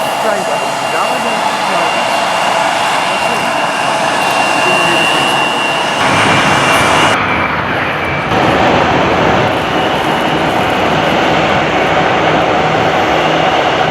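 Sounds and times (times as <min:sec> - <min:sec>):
high engine whine: 0:00.0 - 0:13.9
jet engines roaring: 0:00.0 - 0:13.9.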